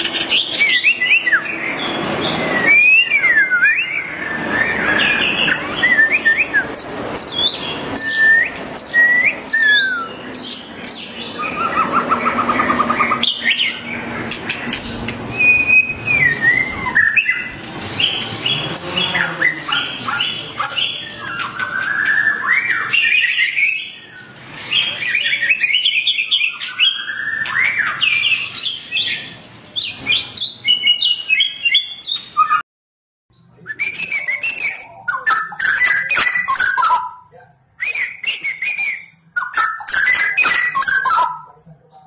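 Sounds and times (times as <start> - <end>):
bird singing whistled phrases: 0.0 - 13.9, 15.3 - 18.7, 19.4 - 32.6, 33.4 - 41.6
harsh clicking bird notes: 4.7 - 26.0, 26.6 - 29.1, 37.8 - 41.3.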